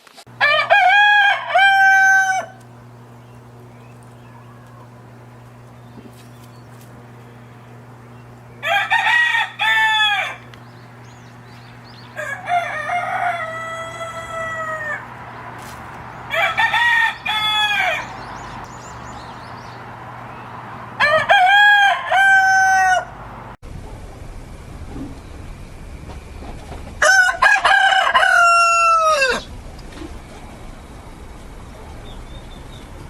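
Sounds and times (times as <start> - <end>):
steady low hum: 0.2 - 33.0
rooster crowing: 0.3 - 2.7, 8.6 - 10.6, 11.8 - 15.4, 16.1 - 18.6, 19.6 - 23.3, 27.0 - 29.5.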